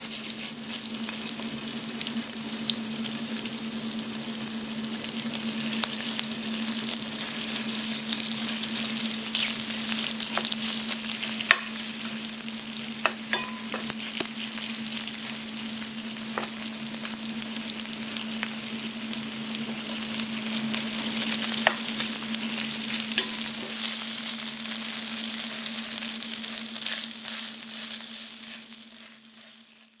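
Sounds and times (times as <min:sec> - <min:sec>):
pancake sizzling in oil: 0:00.0 - 0:30.0.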